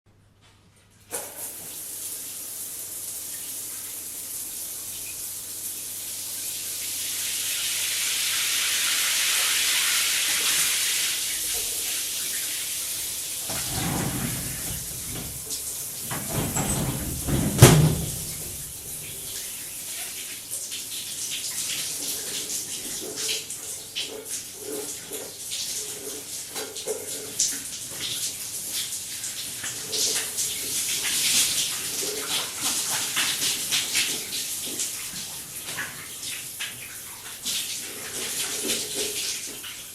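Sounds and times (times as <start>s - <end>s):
shower water spraying: 7.0s - 20.0s
water splashing: 13.5s - 19.5s.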